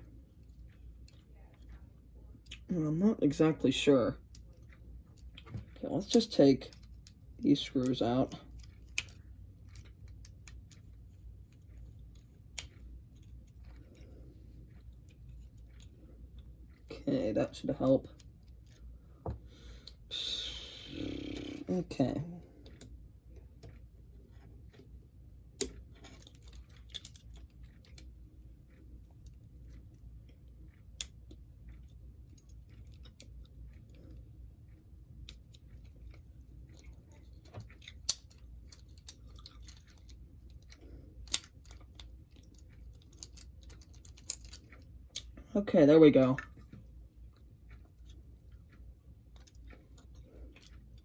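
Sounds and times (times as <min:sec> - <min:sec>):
small parts clicking and tapping: 0:04.3 - 0:14.1, 0:25.6 - 0:28.1, 0:34.7 - 0:45.4.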